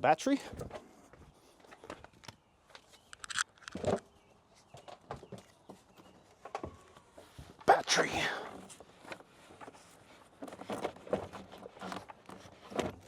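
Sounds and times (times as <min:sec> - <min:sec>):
hand tools and metal parts rattling: 0:01.6 - 0:04.1.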